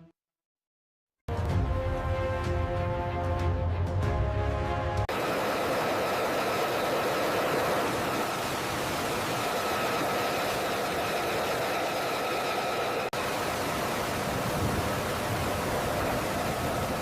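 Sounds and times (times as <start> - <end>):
jet engine whine: 5.1 - 17.0.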